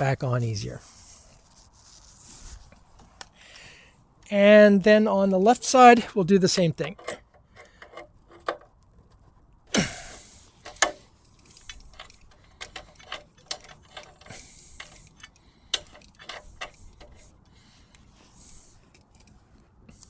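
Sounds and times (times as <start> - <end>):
wrench clicking on metal: 10.6 - 17.3.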